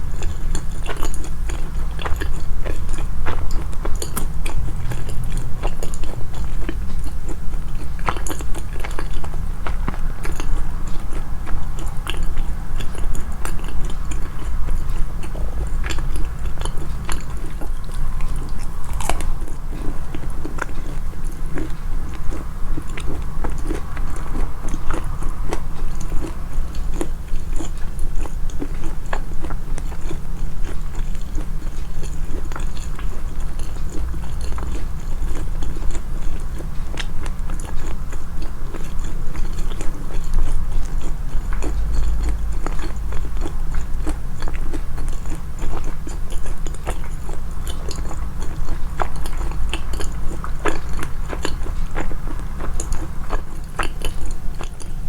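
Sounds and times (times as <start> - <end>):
person chewing food: 0.0 - 55.0
low rumble: 1.7 - 28.8.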